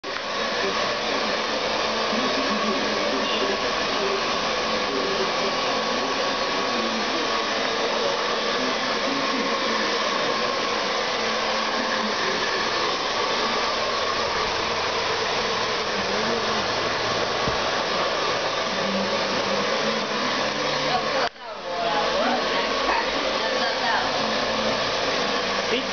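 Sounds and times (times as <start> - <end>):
hair dryer running: 0.0 - 25.9.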